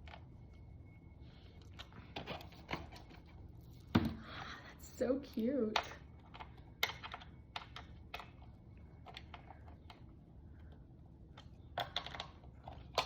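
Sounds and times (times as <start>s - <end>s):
small parts clicking and tapping: 5.3s - 13.0s.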